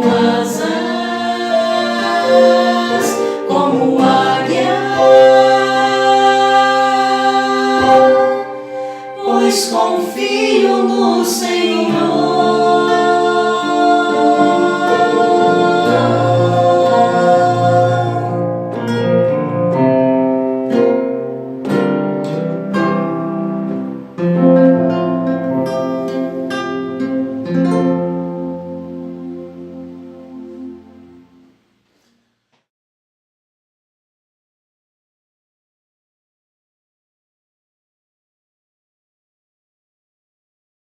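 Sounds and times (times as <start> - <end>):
person singing worship song: 0.0 - 18.6
plucked guitar notes: 0.0 - 31.7
held accompaniment chords: 0.0 - 31.9.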